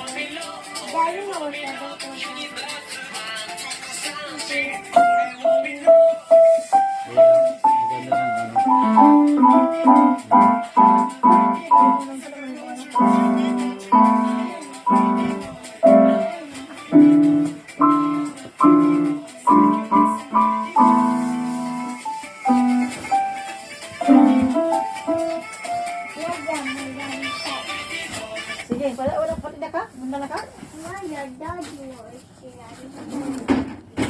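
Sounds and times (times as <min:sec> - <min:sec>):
piano melody over chords: 0:04.8 - 0:12.2, 0:13.0 - 0:26.3.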